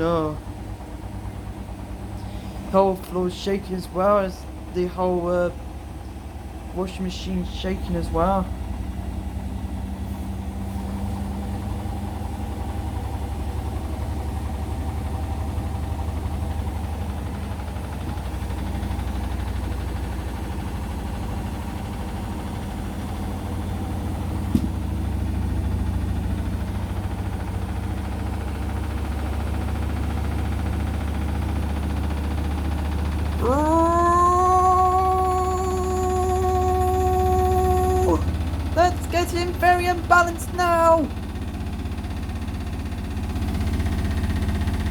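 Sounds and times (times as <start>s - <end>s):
washing machine knock: 24.5s - 24.8s.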